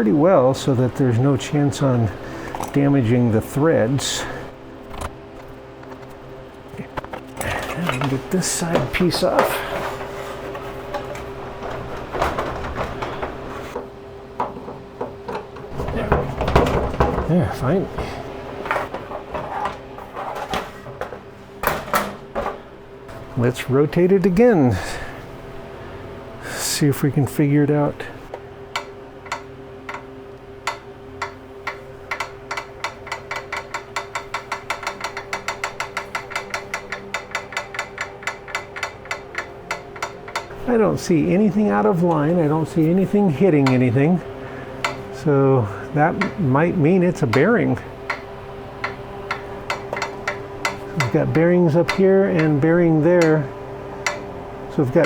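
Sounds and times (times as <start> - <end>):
steady hum: 0.0 - 55.0
flywheel ticking: 28.7 - 40.6, 46.1 - 55.0.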